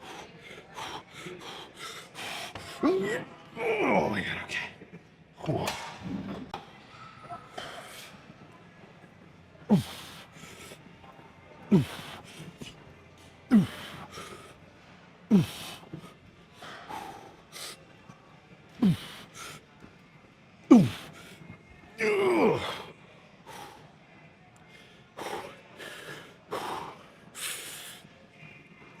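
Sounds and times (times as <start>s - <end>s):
man groaning: 9.7s - 10.1s, 11.7s - 12.2s, 13.5s - 13.9s, 15.3s - 15.7s, 18.8s - 19.2s, 20.7s - 21.1s, 22.0s - 22.9s.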